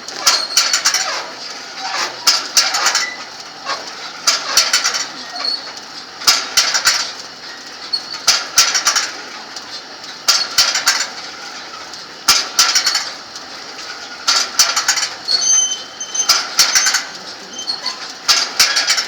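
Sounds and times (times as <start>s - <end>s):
metal parts scraping and clanking: 0.0s - 5.7s, 13.8s - 19.0s.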